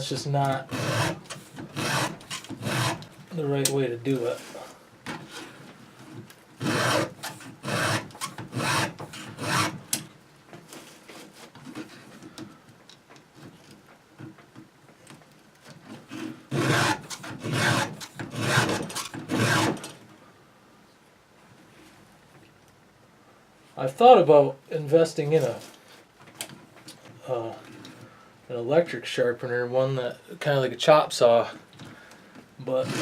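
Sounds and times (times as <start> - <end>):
file rasping on chainsaw chain: 0.7 - 3.1, 6.6 - 9.8, 16.5 - 19.9, 32.8 - 33.0.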